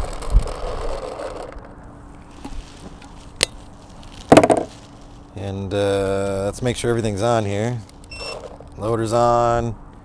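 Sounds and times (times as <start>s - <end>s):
paintballs rattling into loader: 4.3s - 4.7s.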